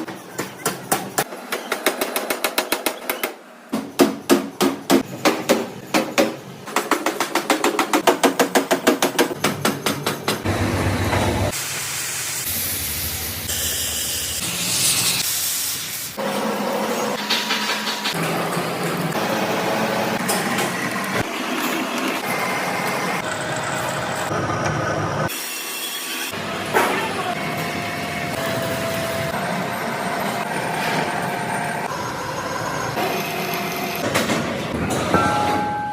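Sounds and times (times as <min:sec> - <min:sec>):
heavy machinery whining and humming: 0:10.5 - 0:11.6, 0:18.2 - 0:34.1.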